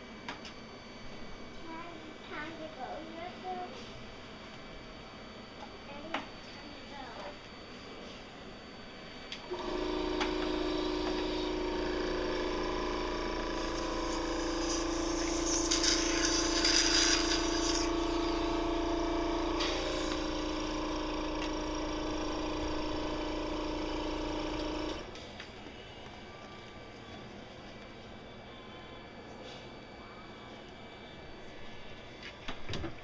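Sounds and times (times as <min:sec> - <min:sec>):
cough assist machine motor hum: 0:09.4 - 0:25.2.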